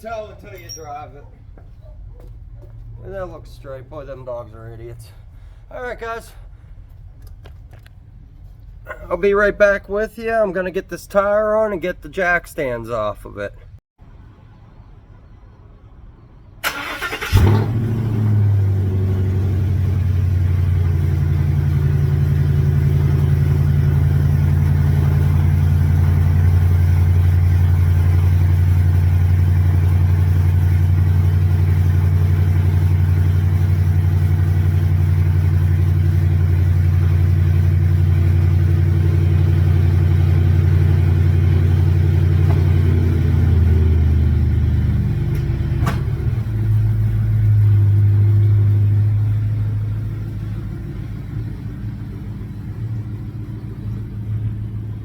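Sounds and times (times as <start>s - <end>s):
pickup truck engine and road drone: 16.6s - 55.0s.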